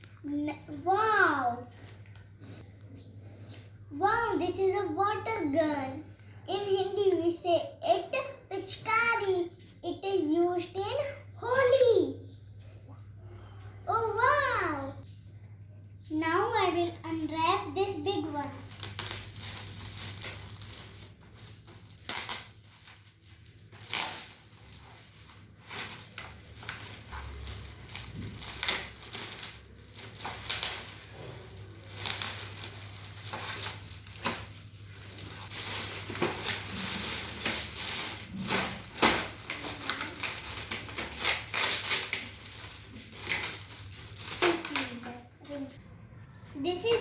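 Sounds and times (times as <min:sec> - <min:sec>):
wrapping paper tearing and crumpling: 0:17.8 - 0:45.6.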